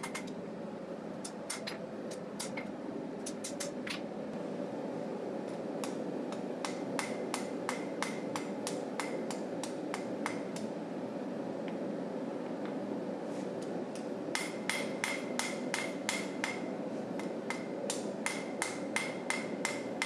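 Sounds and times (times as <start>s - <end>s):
hammer striking steel on anvil: 6.6s - 10.7s, 14.4s - 20.0s.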